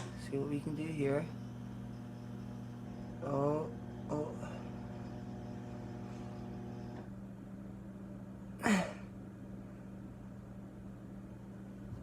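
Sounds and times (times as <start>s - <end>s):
man sneezing: 8.6s - 9.1s.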